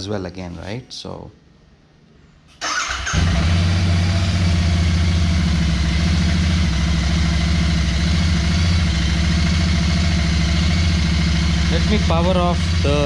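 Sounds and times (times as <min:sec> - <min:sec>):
motorcycle engine starting and idling: 0:02.6 - 0:13.0.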